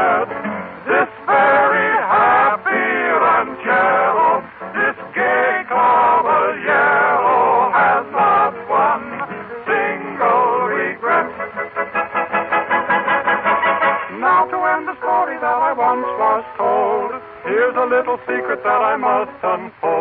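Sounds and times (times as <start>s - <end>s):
male vocal group singing: 0.0s - 12.0s, 14.0s - 20.0s
dance band accompaniment: 11.1s - 15.2s.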